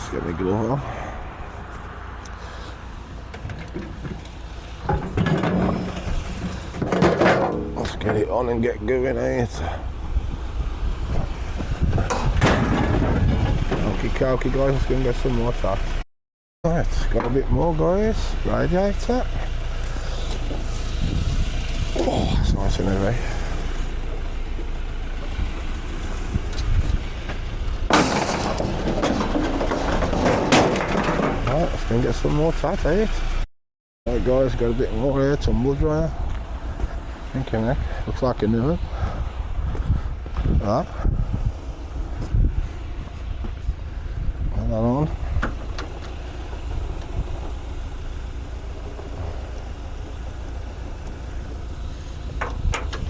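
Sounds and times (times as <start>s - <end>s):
vehicle engine rumble: 0.0s - 33.5s, 34.1s - 53.0s
scrap metal clattering: 3.2s - 8.3s, 12.0s - 14.2s, 27.8s - 32.1s.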